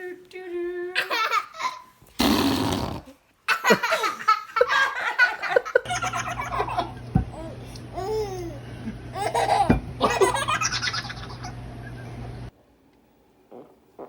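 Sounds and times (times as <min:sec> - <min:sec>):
baby farting: 0:02.2 - 0:03.2, 0:13.5 - 0:14.0.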